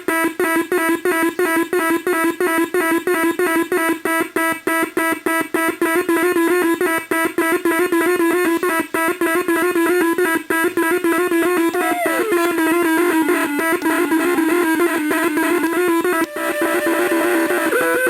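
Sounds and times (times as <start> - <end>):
pulsing electronic tones: 6.1 - 18.0.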